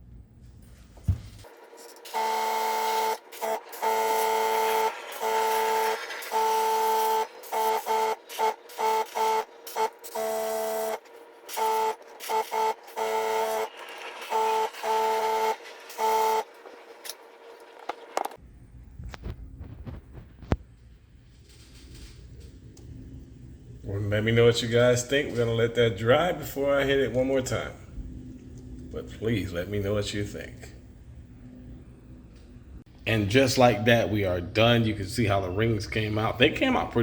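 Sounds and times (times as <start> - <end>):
stepper motors whining: 1.5 - 18.4.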